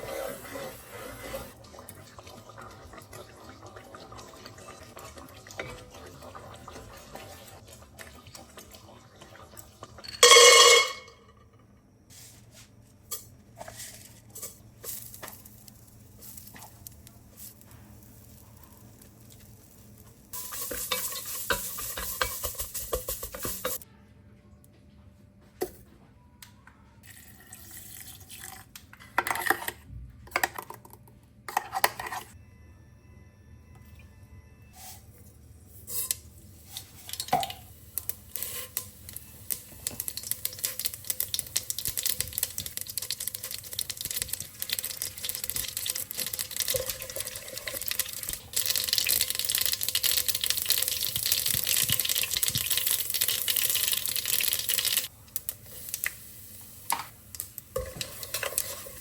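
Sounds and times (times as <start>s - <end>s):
utensil stirring and scraping: 0.0s - 9.4s, 20.4s - 23.8s, 31.5s - 32.4s, 57.8s - 59.0s
light sizzling: 0.0s - 11.3s, 12.1s - 23.8s, 34.7s - 59.0s.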